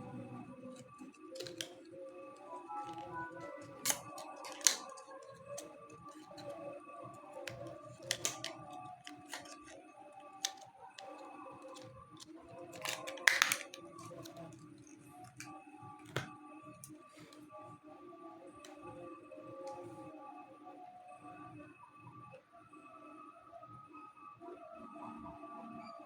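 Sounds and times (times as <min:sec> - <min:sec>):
background music: 0:00.0 - 0:21.2
small parts clicking and snapping: 0:00.6 - 0:06.6, 0:07.2 - 0:17.0.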